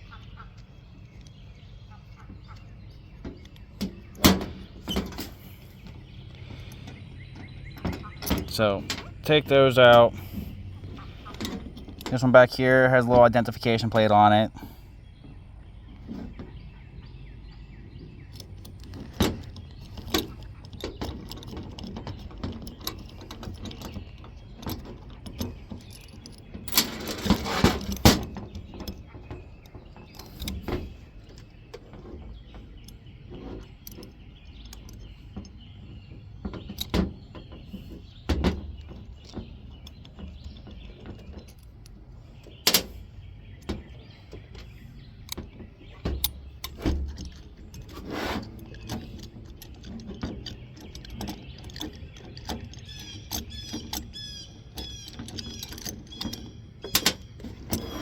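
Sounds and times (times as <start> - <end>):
metal clatter: 17.9 - 58.0
metal clicks of tools and screws: 18.3 - 35.6, 36.6 - 43.0, 43.6 - 58.0.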